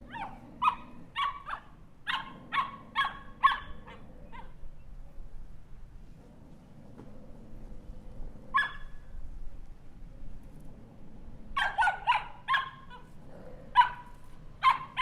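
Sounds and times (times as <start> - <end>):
small dog barking: 0.0 - 4.6, 8.5 - 9.0, 11.6 - 13.1, 13.7 - 15.0.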